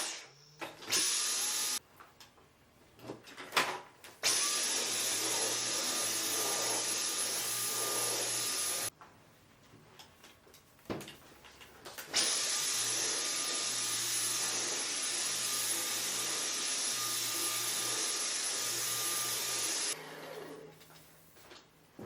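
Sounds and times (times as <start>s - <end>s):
vacuum cleaner motor whine: 12.2s - 20.7s.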